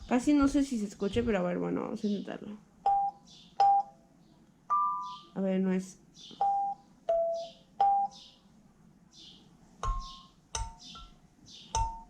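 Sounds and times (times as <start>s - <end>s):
kalimba notes plucked: 9.8s - 11.1s, 11.7s - 12.0s.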